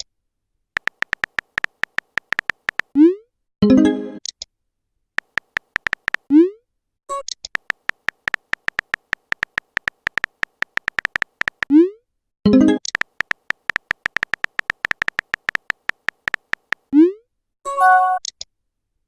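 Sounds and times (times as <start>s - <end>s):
phone keyboard typing clicks: 0.8s - 3.0s, 5.2s - 6.3s, 7.5s - 11.7s, 12.8s - 16.9s
rising pop message sound: 12.8s - 16.9s.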